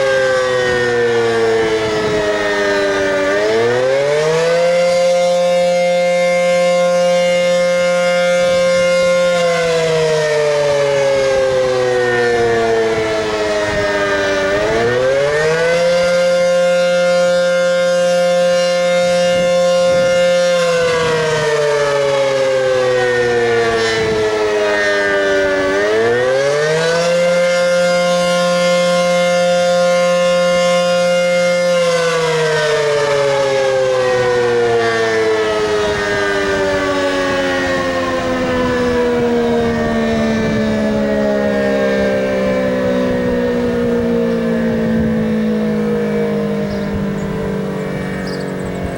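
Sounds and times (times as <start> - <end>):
wavering tornado siren: 0.0 - 48.9.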